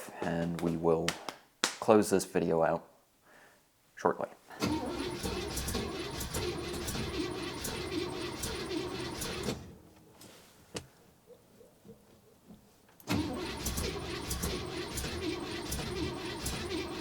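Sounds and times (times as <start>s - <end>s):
car engine running rough: 4.7s - 9.8s, 13.1s - 17.0s.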